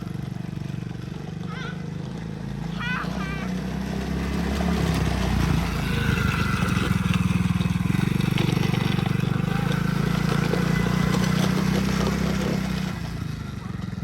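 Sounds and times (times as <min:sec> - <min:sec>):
atv engine running: 0:00.0 - 0:14.0.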